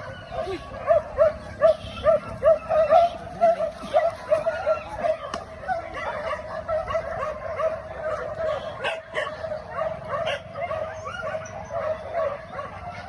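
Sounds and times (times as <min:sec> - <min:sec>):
dogs barking and yelping: 0:00.0 - 0:13.0.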